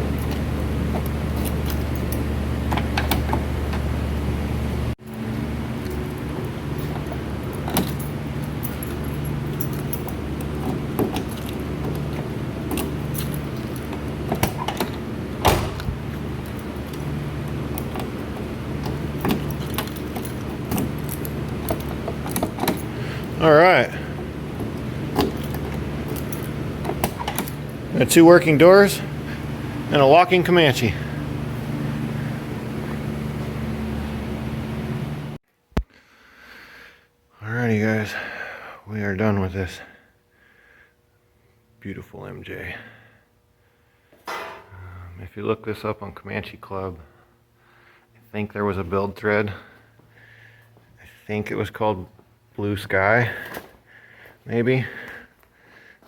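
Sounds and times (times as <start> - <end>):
loud thud: 15.4 - 16.1.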